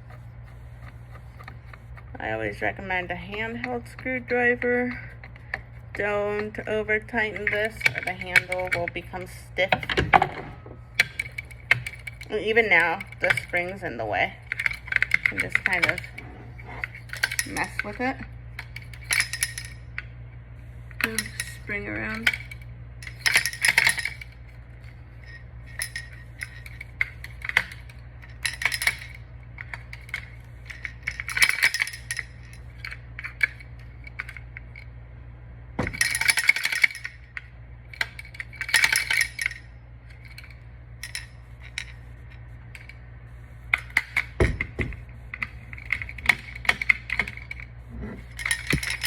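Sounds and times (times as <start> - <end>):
small metal parts rattling and clinking: 2.6 - 20.1, 20.9 - 34.9, 35.8 - 49.0.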